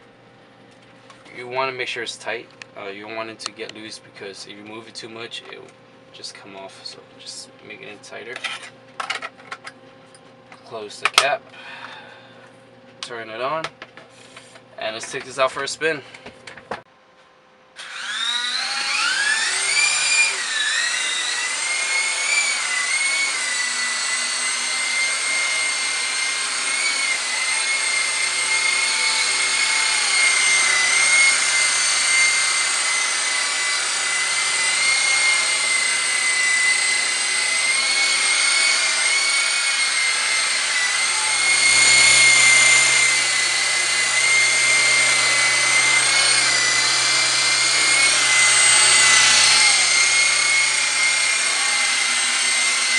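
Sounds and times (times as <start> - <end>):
toy helicopter rotor whine: 17.8 - 52.9.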